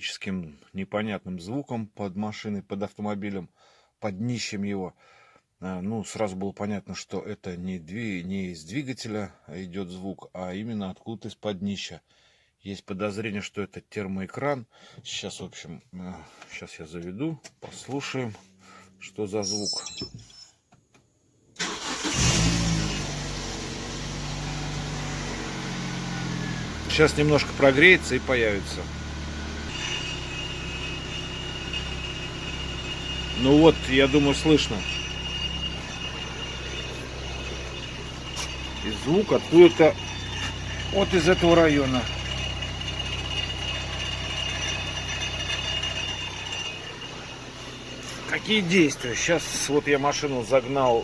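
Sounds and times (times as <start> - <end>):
car engine starting and idling: 21.6 - 51.0.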